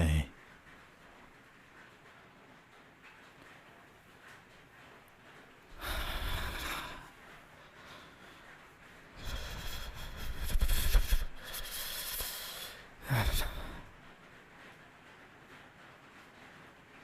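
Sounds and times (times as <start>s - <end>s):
man breathing out heavily: 5.8s - 8.6s, 9.2s - 13.9s
man sighing low: 13.0s - 13.9s.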